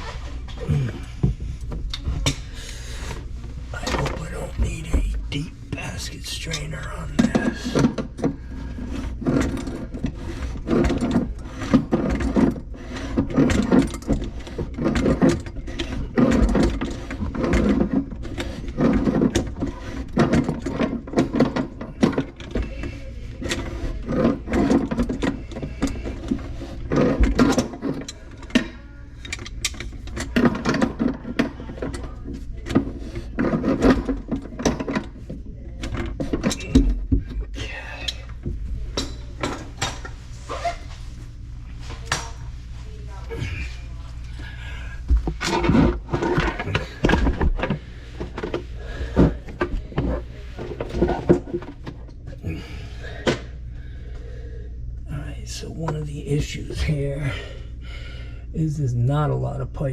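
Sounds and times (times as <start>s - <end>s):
tools clattering on plastic pipe: 7.2s - 40.8s, 45.1s - 53.5s.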